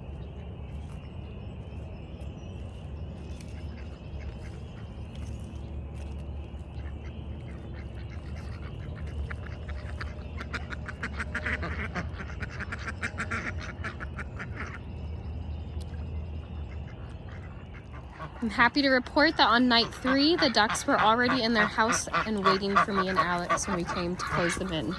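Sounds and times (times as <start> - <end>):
steady low hum: 0.0 - 24.9
ducks quacking: 6.7 - 15.2, 16.4 - 24.9.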